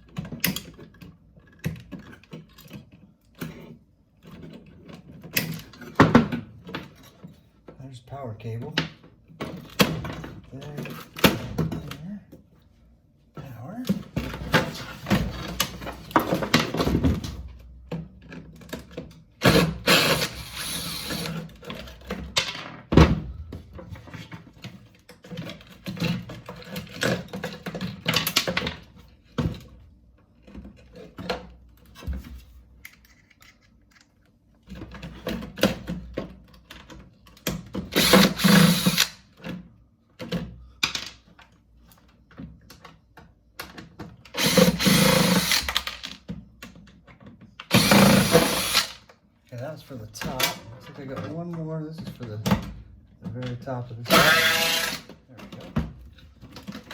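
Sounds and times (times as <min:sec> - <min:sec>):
plastic and metal parts clattering: 0:00.0 - 0:07.8, 0:13.9 - 0:49.1, 0:50.1 - 0:56.9
cordless drill backing out screws: 0:37.9 - 0:39.2, 0:44.3 - 0:46.0, 0:47.7 - 0:49.0, 0:54.1 - 0:55.2.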